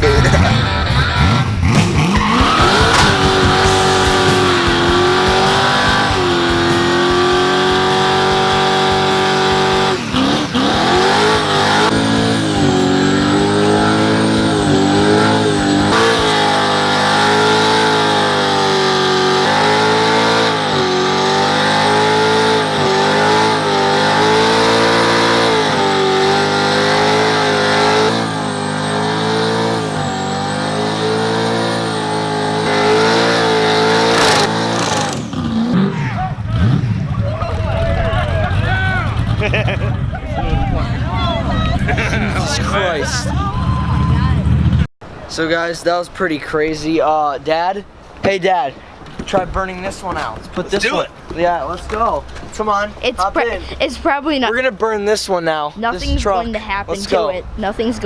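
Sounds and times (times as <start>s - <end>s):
engine revving hard: 0.0s - 44.9s
tires spinning and squealing: 0.0s - 45.4s.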